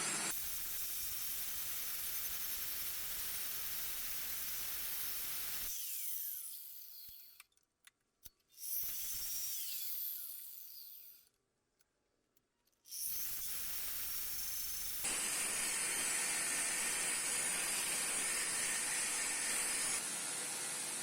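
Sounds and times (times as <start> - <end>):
power grinder running: 15.0 - 21.0.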